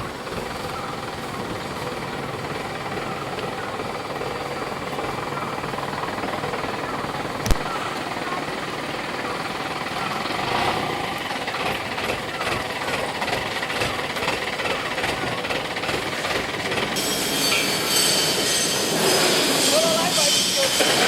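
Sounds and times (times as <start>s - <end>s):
drilling rig clattering: 0.0s - 21.0s
high metallic squeal: 17.0s - 21.0s.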